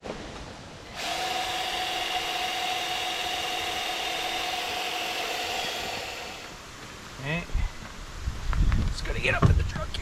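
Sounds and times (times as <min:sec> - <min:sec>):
power tool motor whine: 0:00.9 - 0:06.6.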